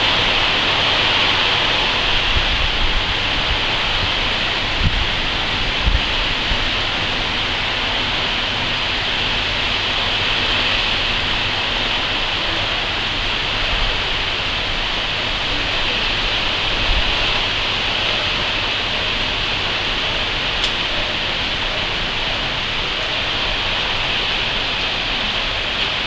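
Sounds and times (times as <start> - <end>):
heavy rain pouring: 0.0 - 26.0
wind bumping microphone: 1.8 - 7.2.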